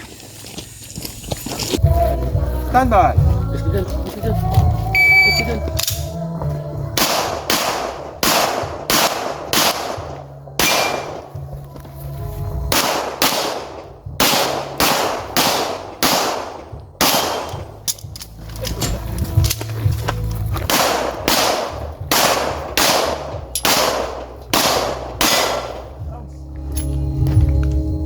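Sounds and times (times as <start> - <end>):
pistol shots: 7.0 - 11.4, 12.7 - 17.9, 20.6 - 26.0.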